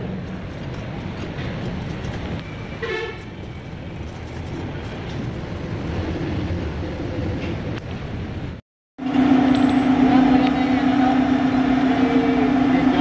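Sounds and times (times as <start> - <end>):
motor traffic rumble: 0.0 - 13.0
vehicle horn toot: 2.8 - 3.2.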